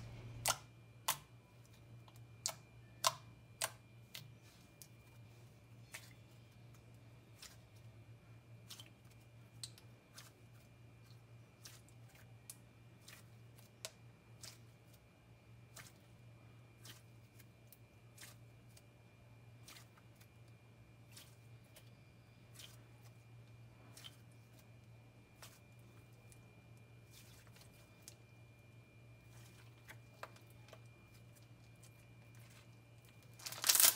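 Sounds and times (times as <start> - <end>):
low steady hum: 0.0 - 33.9
slime clicking and popping: 0.4 - 1.3, 2.4 - 4.2.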